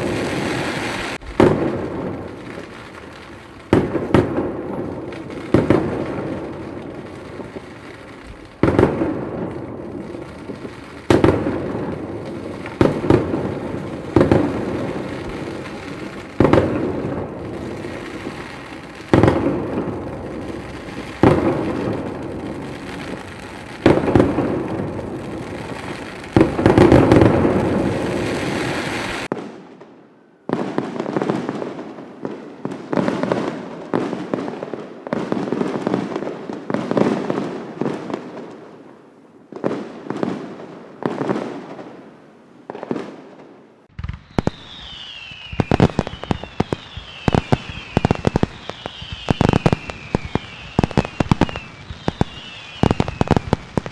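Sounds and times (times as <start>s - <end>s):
falling firework whistles: 0.0s - 9.4s, 10.0s - 31.8s, 43.9s - 53.9s
sharp firework cracks: 0.0s - 32.3s, 42.7s - 53.9s.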